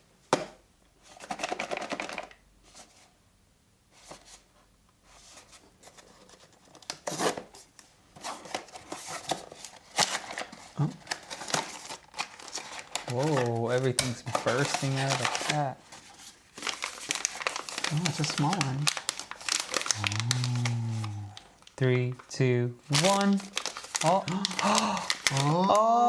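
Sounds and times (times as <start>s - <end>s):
packaging crinkling and tearing: 8.2s - 25.8s.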